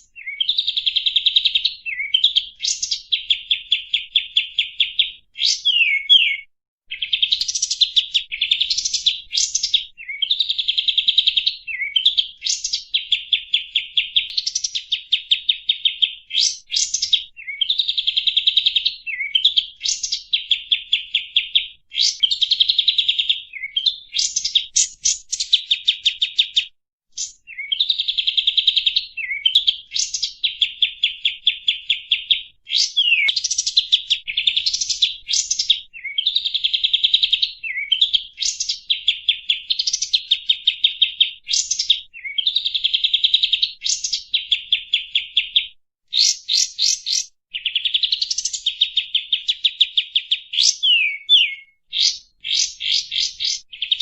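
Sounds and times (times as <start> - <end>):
bird singing chattering trills: 1.7 - 10.5, 28.8 - 36.5, 50.5 - 54.0.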